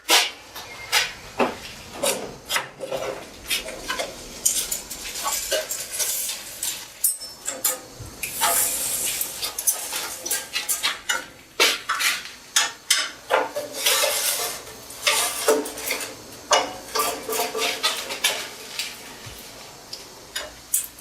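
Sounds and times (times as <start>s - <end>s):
steel pieces knocking and clinking: 20.4s - 21.0s.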